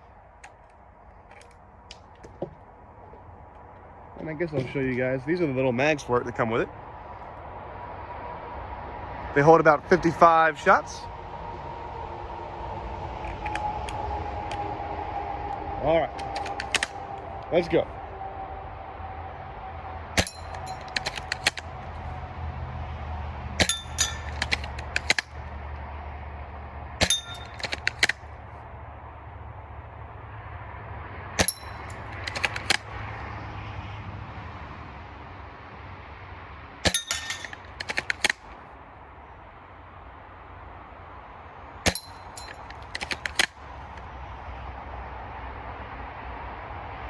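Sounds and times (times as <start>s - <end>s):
rifle bolt clicking: 16.2s - 17.0s, 20.2s - 21.7s, 23.6s - 25.3s, 27.0s - 28.2s, 31.4s - 32.8s, 36.9s - 38.4s, 41.9s - 43.5s
pellets hitting metal targets: 20.2s - 21.6s, 23.6s - 25.2s, 27.0s - 28.1s, 31.4s - 32.8s, 36.9s - 38.4s, 41.9s - 43.5s.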